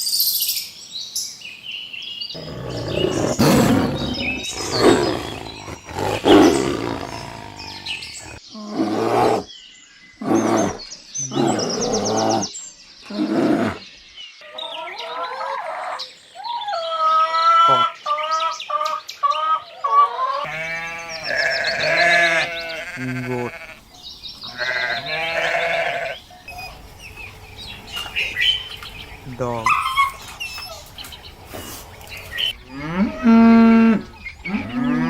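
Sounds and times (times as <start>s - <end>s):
big cat roaring: 2.4s - 9.5s, 10.2s - 12.5s, 13.1s - 13.8s.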